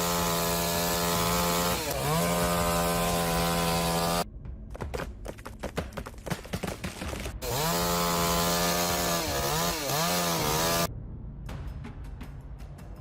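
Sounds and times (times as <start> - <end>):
chainsaw engine: 0.0 - 4.2, 7.4 - 10.9.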